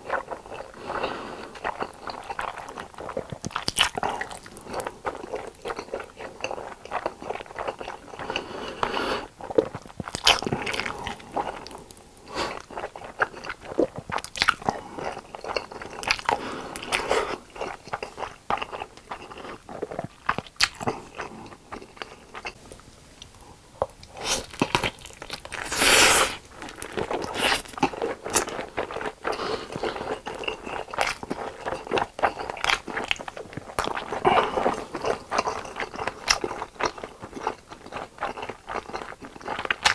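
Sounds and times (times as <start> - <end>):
biting and chewing: 23.8 - 39.9.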